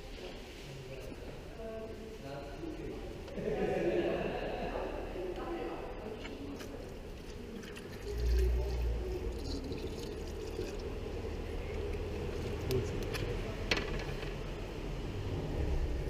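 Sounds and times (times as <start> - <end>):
oil pouring into a drain pan: 7.3 - 11.9.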